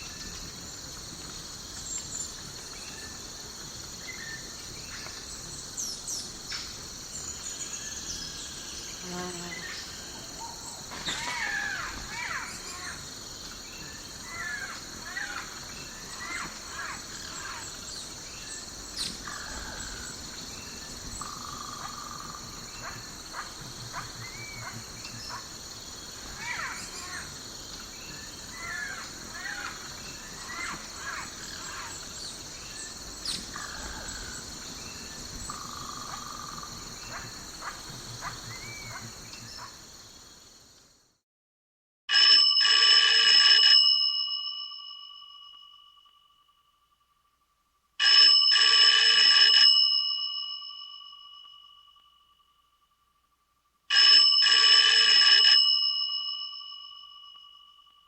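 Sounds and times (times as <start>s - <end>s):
birds calling: 0.0s - 39.9s
insects droning: 0.0s - 41.2s.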